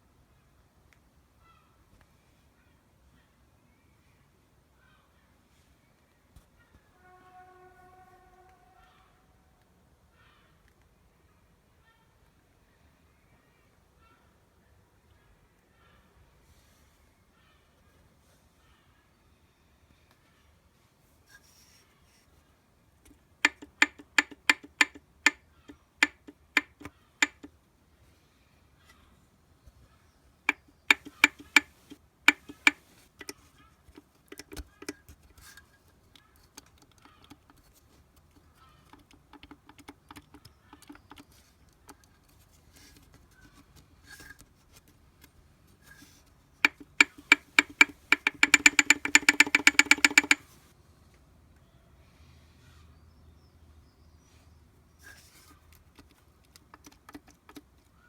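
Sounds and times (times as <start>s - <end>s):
sharp metallic ticks: 23.4s - 25.4s, 26.0s - 27.5s, 30.5s - 32.8s, 46.6s - 50.5s.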